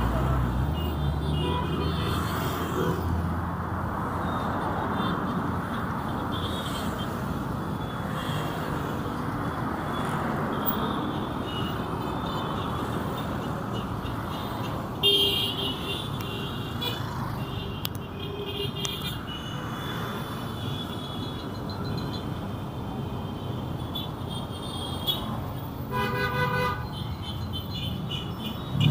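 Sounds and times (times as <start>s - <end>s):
street traffic: 0.0s - 28.9s
vehicle horn toot: 25.9s - 27.0s.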